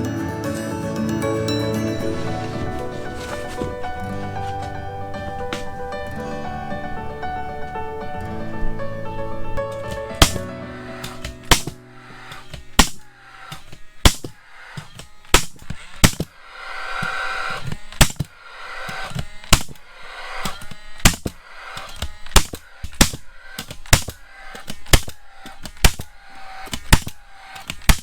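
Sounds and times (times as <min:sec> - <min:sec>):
nails hammered into wood: 0:09.7 - 0:16.4, 0:17.0 - 0:28.0.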